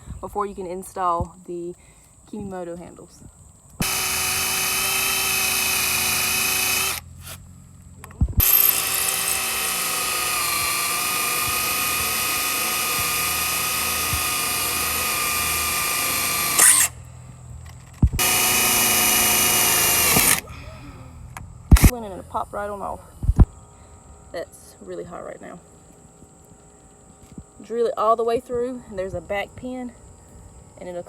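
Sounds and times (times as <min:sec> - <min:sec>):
power drill drilling: 0:03.8 - 0:07.4, 0:08.4 - 0:17.0, 0:17.9 - 0:20.5, 0:21.7 - 0:21.9.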